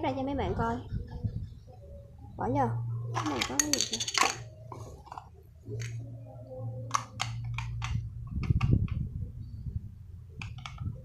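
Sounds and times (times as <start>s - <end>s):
plastic toy clicks and knocks: 3.2s - 4.5s, 6.9s - 8.8s, 10.4s - 10.9s.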